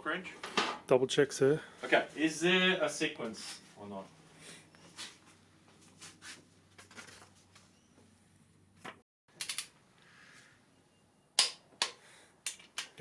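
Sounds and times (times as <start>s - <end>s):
metallic clicks of hand tools: 11.4s - 13.0s.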